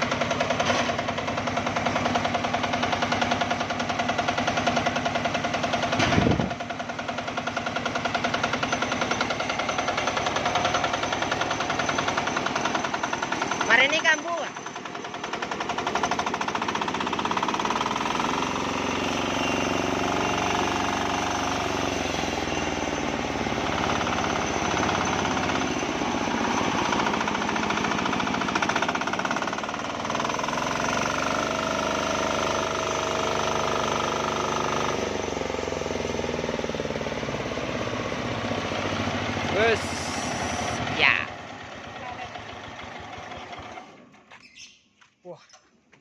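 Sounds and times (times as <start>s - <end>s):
diesel engine knocking: 0.0s - 44.1s.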